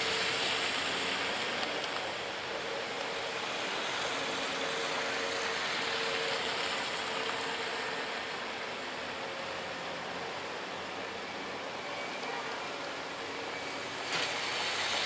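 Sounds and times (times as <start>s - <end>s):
heavy rain hissing: 0.0s - 9.8s, 13.3s - 15.0s
faint vehicle engine: 0.0s - 15.0s.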